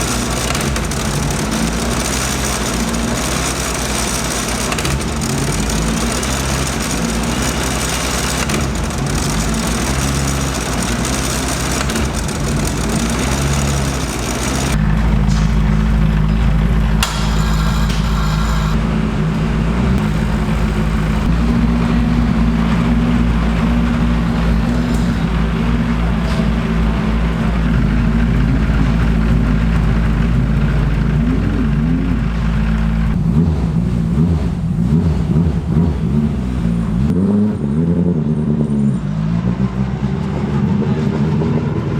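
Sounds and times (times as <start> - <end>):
race car engine low revs: 0.0 - 41.9.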